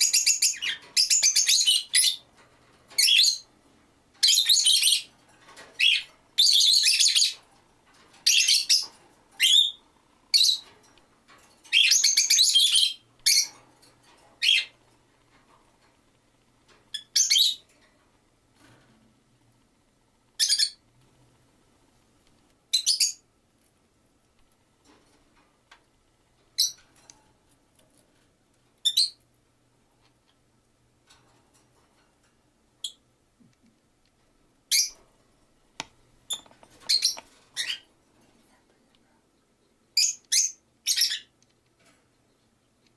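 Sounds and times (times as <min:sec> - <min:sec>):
birds chirping: 0:00.0 - 0:02.3, 0:02.9 - 0:03.5, 0:04.2 - 0:05.2, 0:05.8 - 0:07.4, 0:08.2 - 0:10.7, 0:11.7 - 0:13.6, 0:14.4 - 0:14.8, 0:16.9 - 0:17.7, 0:20.4 - 0:20.8, 0:36.2 - 0:38.0, 0:39.9 - 0:41.4.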